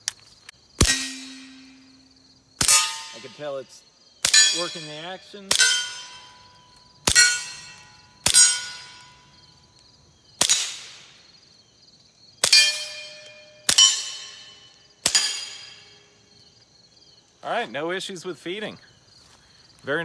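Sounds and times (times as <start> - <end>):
bullet clanging on steel target: 0.8 - 3.6, 4.3 - 9.5, 12.4 - 16.1
suppressed pistol shots: 10.4 - 11.2.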